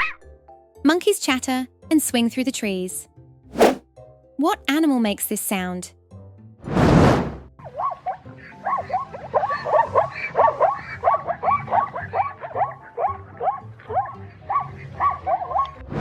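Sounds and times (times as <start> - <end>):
zebra barking: 7.8 - 15.8.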